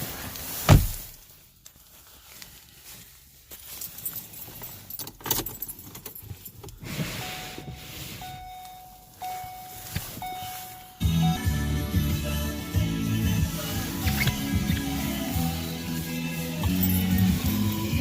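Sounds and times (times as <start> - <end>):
car keys jangling: 3.6 - 11.0, 13.9 - 18.0
car warning chime: 7.1 - 12.4.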